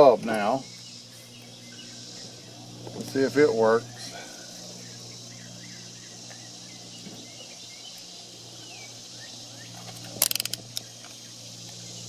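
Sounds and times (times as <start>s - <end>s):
sharp clicks: 10.2s - 10.9s.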